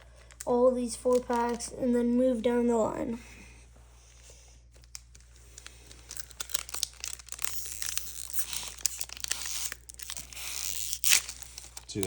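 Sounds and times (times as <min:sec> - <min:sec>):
foil wrapper crinkling and tearing: 0:00.0 - 0:01.7, 0:04.7 - 0:12.0.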